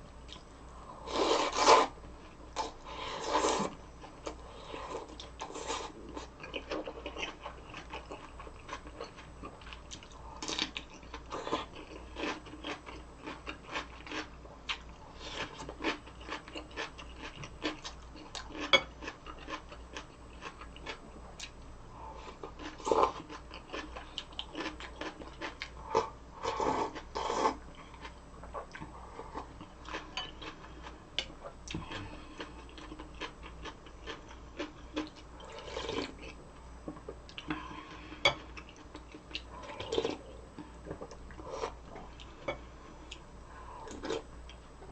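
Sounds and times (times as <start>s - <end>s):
chewing and crunching food: 1.2s - 44.9s.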